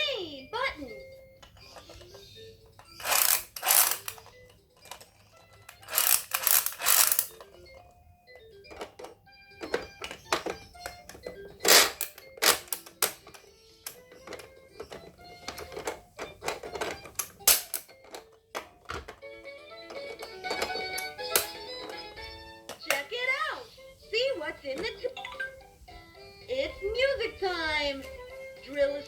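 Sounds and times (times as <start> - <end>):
toy buzzing: 1.6 - 7.8
plastic clicks and taps: 6.8 - 23.1.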